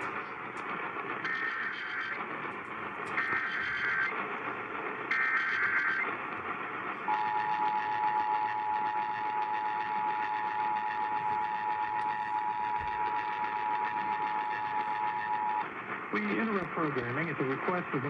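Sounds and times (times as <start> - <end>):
radio static: 0.0 - 18.0
screechy data burst: 1.2 - 2.2, 3.2 - 4.2, 5.1 - 6.2, 7.1 - 15.7.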